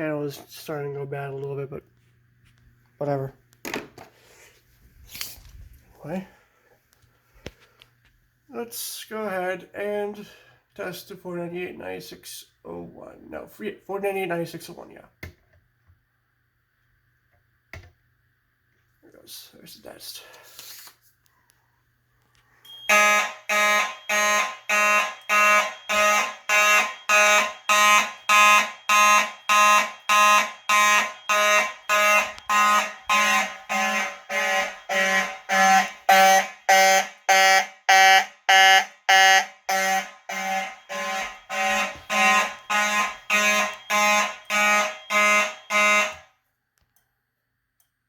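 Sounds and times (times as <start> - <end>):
fire alarm horn pulsing: 22.7 - 46.4.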